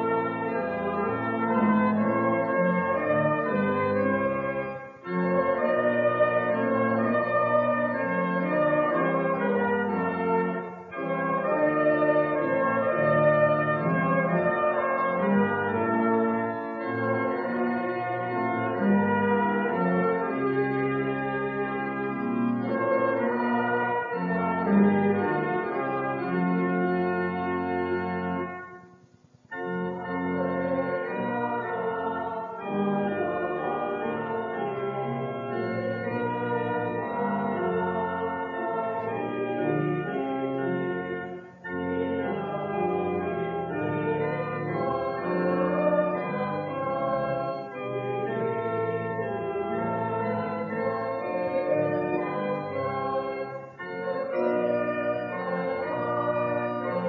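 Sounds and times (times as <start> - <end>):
church organ: 0.0 - 57.0
congregation singing a hymn: 30.0 - 41.4, 42.2 - 57.0.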